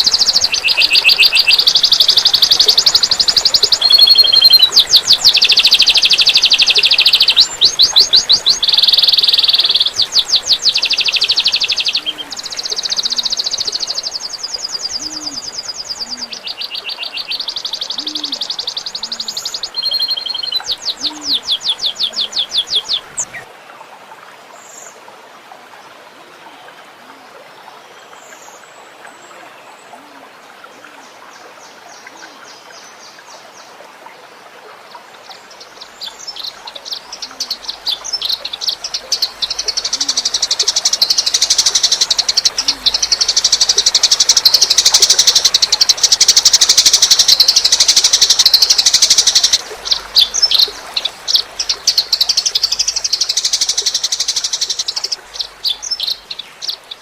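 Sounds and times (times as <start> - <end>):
songbird trilling: 0.0 - 23.5, 35.9 - 57.0
trickling water: 0.0 - 57.0.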